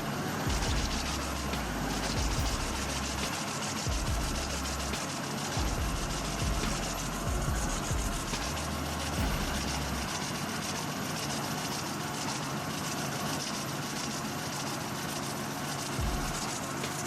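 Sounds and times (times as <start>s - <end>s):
low rumble: 0.0s - 3.3s, 3.9s - 5.0s, 5.6s - 10.2s
heavy machine engine running: 0.0s - 17.0s.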